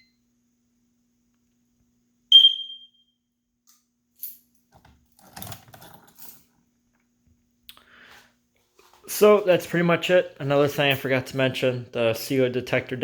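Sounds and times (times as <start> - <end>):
fire alarm beep: 0.0 - 0.2, 2.3 - 3.2.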